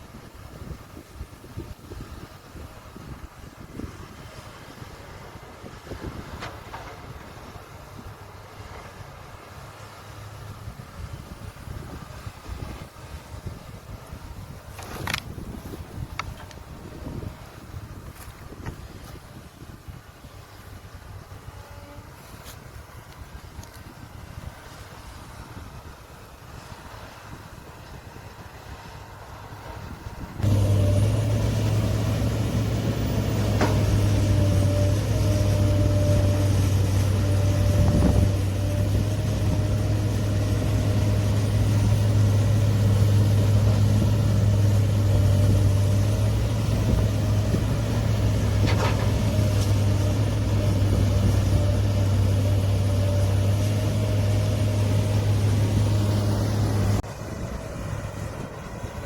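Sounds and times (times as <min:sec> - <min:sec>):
diesel engine humming: 0:28.2 - 0:59.0.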